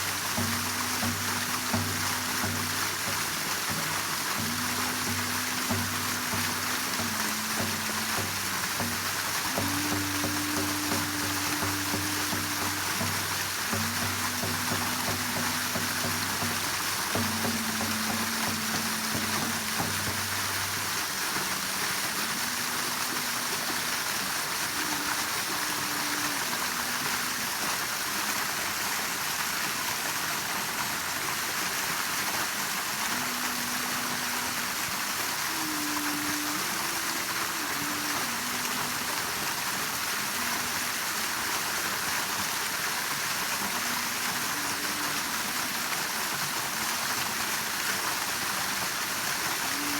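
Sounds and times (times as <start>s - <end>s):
slow melody low notes: 0.0s - 28.9s
waterfall rushing: 0.0s - 49.9s.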